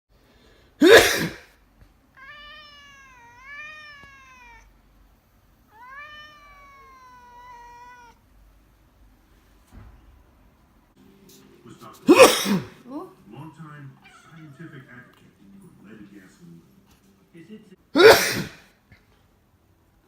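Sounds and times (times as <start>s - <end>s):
person sneezing: 0.8s - 1.6s, 12.1s - 12.8s, 18.0s - 18.7s
cat meowing: 2.1s - 4.8s, 5.7s - 8.2s, 14.0s - 15.2s.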